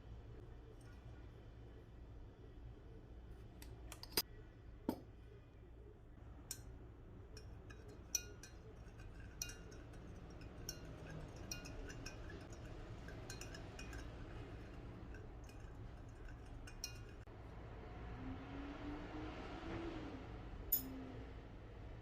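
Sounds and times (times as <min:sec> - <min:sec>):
glass clinking: 0:07.3 - 0:17.3, 0:20.7 - 0:21.0.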